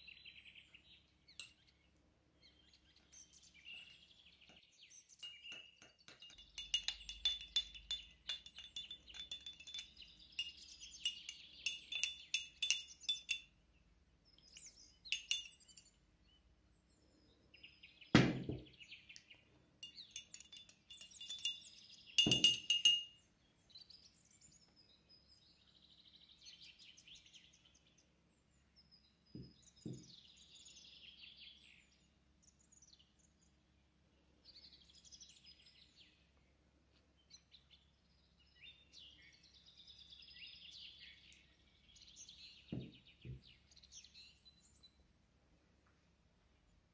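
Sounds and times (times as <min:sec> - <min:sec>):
birds chirping faintly: 0:00.0 - 0:46.9
glass clinking: 0:01.4 - 0:01.6, 0:05.2 - 0:13.6, 0:14.5 - 0:15.9, 0:19.8 - 0:23.2.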